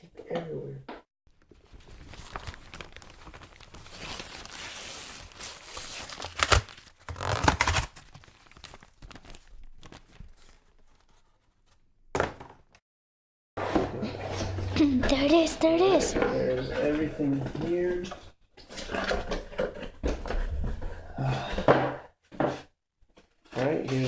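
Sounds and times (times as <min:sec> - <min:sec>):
cardboard and packaging rustling: 0:01.3 - 0:11.9
packing tape tearing: 0:02.0 - 0:10.6.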